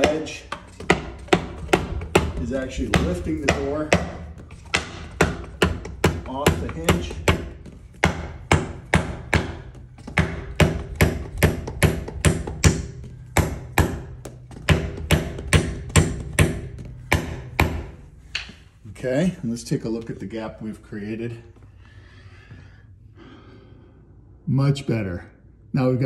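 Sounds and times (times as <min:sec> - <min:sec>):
rubber mallet striking wooden wedge: 0:00.0 - 0:18.6.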